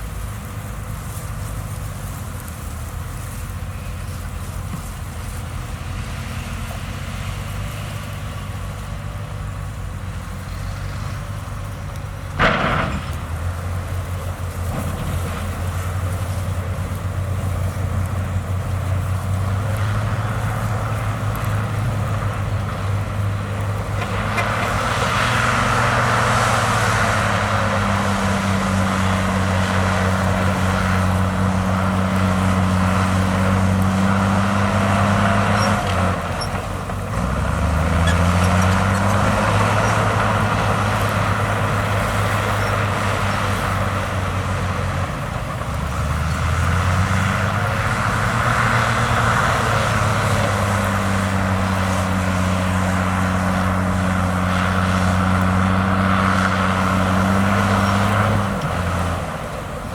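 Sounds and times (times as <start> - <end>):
heavy diesel engine running: 0.0 - 59.9
sharp bang: 12.4 - 13.5.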